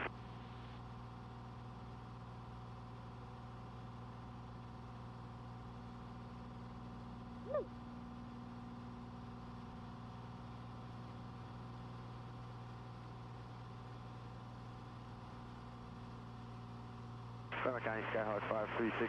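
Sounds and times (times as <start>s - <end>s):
propeller plane engine drone: 0.0s - 19.0s.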